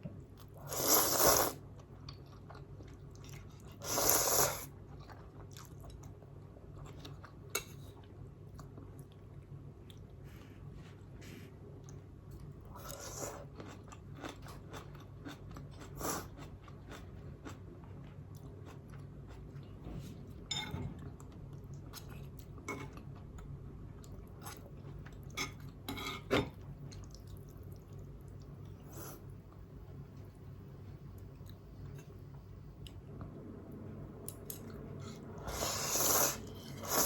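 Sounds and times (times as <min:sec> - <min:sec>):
low steady hum: 0:00.0 - 0:37.0
chewing noodles: 0:12.7 - 0:19.7.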